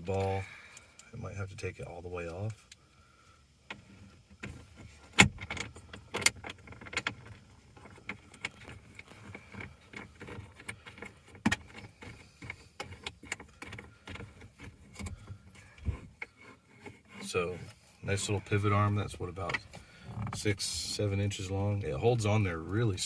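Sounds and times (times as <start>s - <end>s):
metal parts clicking and rattling: 4.4s - 17.4s.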